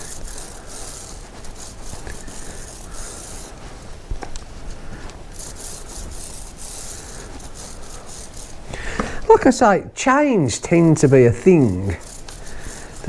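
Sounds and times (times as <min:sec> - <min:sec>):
chain being scrubbed: 0:00.0 - 0:09.6, 0:10.2 - 0:13.0.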